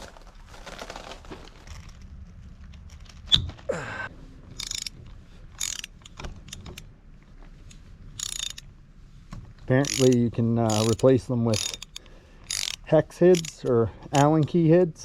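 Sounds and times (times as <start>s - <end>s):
ratchet wrench rasping: 4.6s - 6.8s, 8.2s - 8.6s, 9.7s - 14.6s
metal tool clinking: 4.6s - 6.9s, 9.8s - 14.7s
tool clicks: 5.6s - 6.9s, 9.8s - 14.6s.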